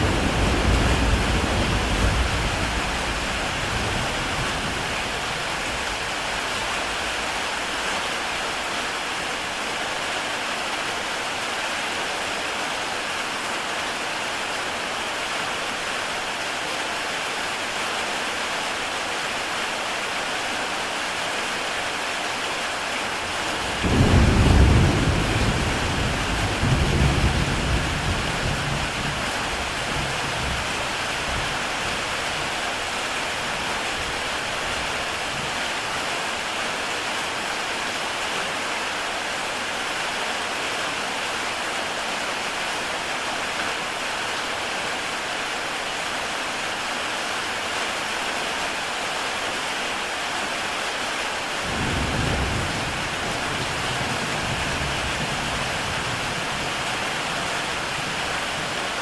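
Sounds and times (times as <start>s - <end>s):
thunder rumbling: 0.0s - 5.3s, 23.6s - 31.4s
heavy rain on tile roof: 0.0s - 59.0s.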